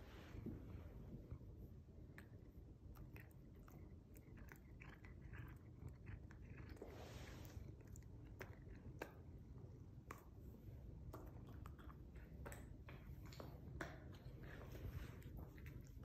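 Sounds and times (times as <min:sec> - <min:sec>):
cat purring: 0:00.0 - 0:12.4
cats chewing treats: 0:02.2 - 0:16.0.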